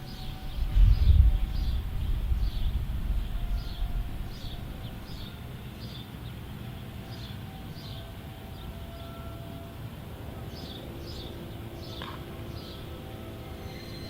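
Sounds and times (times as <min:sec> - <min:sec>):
low rumble: 0:00.0 - 0:05.7
bird chirping: 0:00.0 - 0:09.4, 0:10.3 - 0:14.0.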